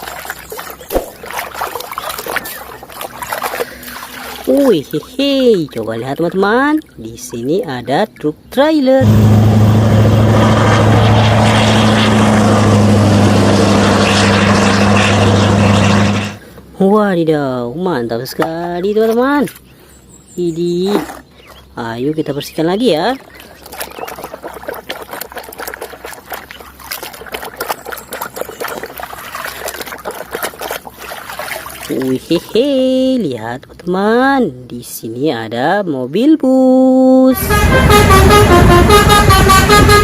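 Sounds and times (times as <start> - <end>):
water splashing and trickling: 0.0 - 16.6, 17.8 - 35.0
pressure washer motor hum: 9.0 - 16.4.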